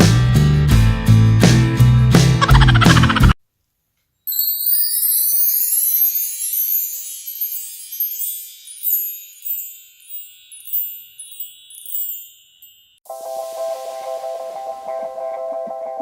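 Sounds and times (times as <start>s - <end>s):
high metallic chimes ringing: 4.3s - 13.0s.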